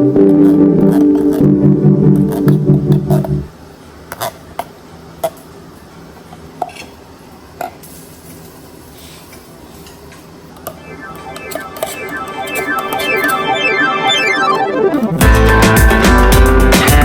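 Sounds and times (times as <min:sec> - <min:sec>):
background music: 0:10.8 - 0:17.0.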